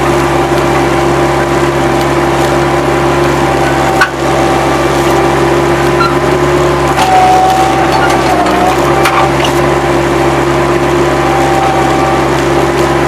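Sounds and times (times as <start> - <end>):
loader engine drone with whine: 0.0 - 13.0.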